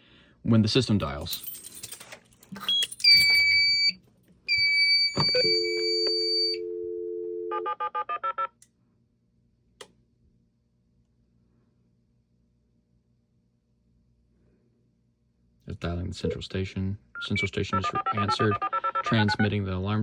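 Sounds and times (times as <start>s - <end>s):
touch-tone digits dialing: 2.6s - 6.6s, 17.2s - 19.5s
long high electronic beeps: 2.8s - 6.6s, 17.2s - 19.5s
phone line click: 3.1s - 6.7s
steady dial tone: 4.5s - 8.5s, 17.3s - 19.5s.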